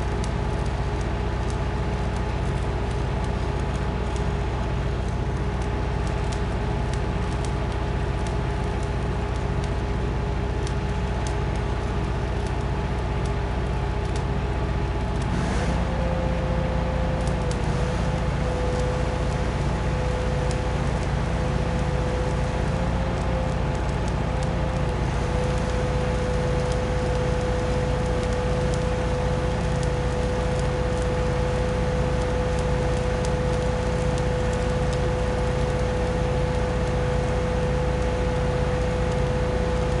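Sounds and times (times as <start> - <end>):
light crackling: 16.0 - 40.0.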